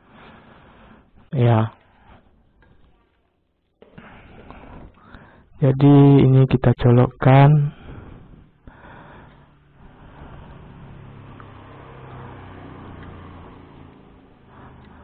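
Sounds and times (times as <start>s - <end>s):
vehicle engine humming: 7.7s - 15.0s.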